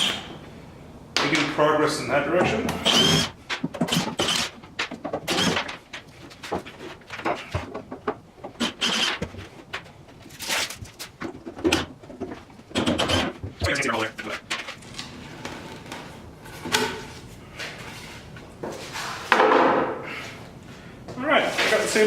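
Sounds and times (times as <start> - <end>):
hand tools knocking and scraping: 2.4 - 14.8.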